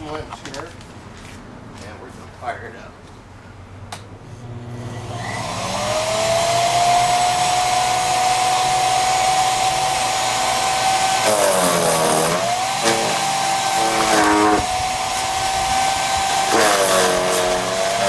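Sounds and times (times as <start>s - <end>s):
chipper shredder motor whining: 4.4s - 18.0s.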